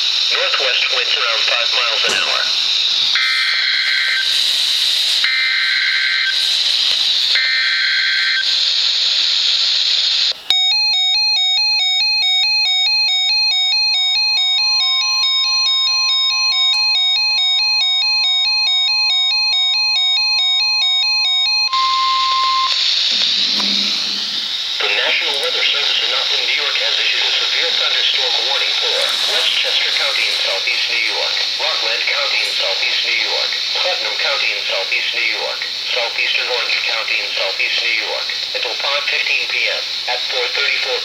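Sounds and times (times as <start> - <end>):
radio hiss: 0.0 - 10.6, 22.7 - 41.0
screechy data tones: 1.4 - 10.6, 21.8 - 37.1
steady single-pitched alarm tone: 2.0 - 33.8
two-pitch electronic alarm beeping: 2.1 - 33.8.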